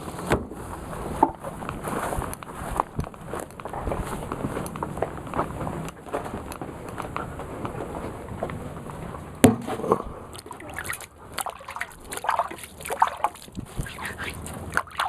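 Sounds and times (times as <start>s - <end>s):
water sloshing and splashing: 7.4s - 15.0s
sharp knock: 9.4s - 9.8s.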